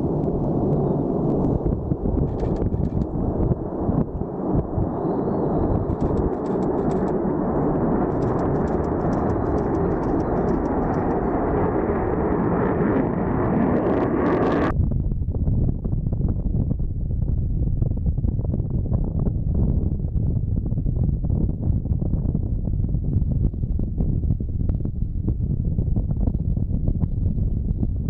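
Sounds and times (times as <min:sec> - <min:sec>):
jet engine roar: 0:00.0 - 0:14.8.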